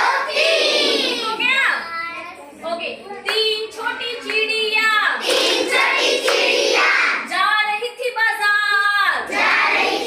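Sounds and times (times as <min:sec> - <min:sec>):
children chanting in unison: 0:00.0 - 0:01.3, 0:05.2 - 0:07.3, 0:09.3 - 0:10.0.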